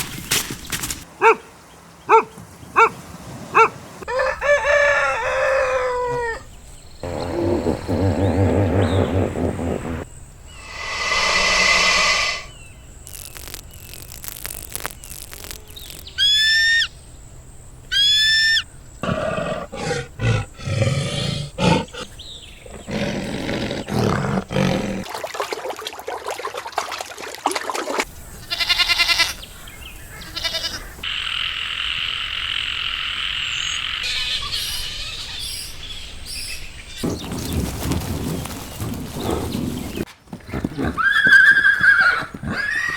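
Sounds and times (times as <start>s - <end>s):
rough roaring: 7.0s - 12.6s, 19.0s - 25.1s
high sweeping animal calls: 7.0s - 12.7s, 15.1s - 16.9s, 28.2s - 37.2s
rapid pulsed animal calls: 7.0s - 12.7s
steady high hissing: 7.0s - 17.0s.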